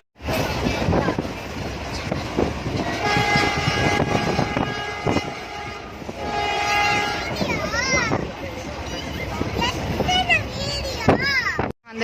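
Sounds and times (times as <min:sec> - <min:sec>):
train rattling on rails: 0:00.2 - 0:12.0
train horn blasts: 0:02.9 - 0:07.4.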